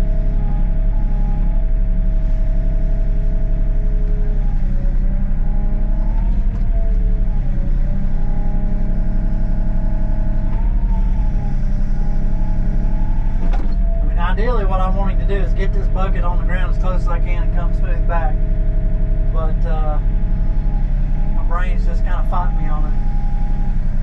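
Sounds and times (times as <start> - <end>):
diesel engine running: 0.0 - 24.0
hydraulic whine: 0.0 - 24.0.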